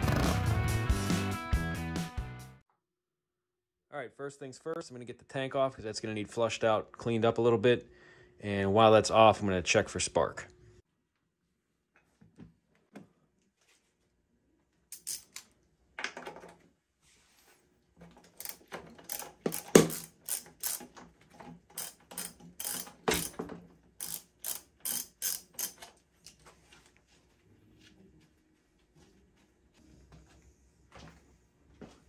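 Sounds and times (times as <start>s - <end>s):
ratchet wrench clicking: 14.9s - 15.4s, 18.4s - 20.9s, 21.7s - 23.4s, 24.0s - 25.9s.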